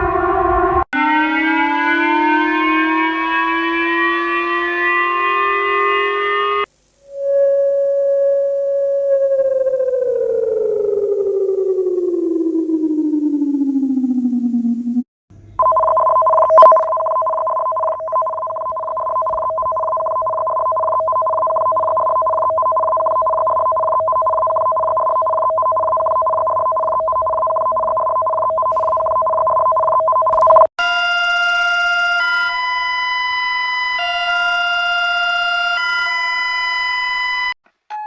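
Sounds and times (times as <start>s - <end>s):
low hum: 0.0s - 1.0s, 6.5s - 30.7s
higher electronic tones: 13.2s - 32.8s
two steady alert tones: 15.6s - 32.8s.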